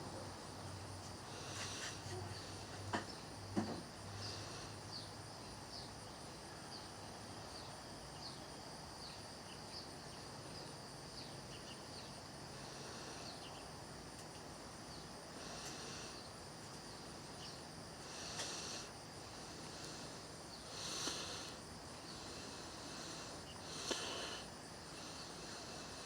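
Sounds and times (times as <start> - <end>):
insects chirping: 0.0 - 26.0
steady high hiss: 0.0 - 26.0.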